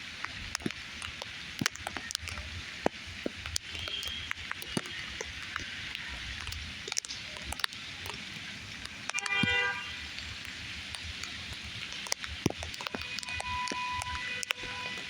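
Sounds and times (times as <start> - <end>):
rain hiss: 0.0 - 15.0
water drips ticking: 0.0 - 15.0
vehicle horn toot: 9.2 - 9.9, 13.0 - 15.0.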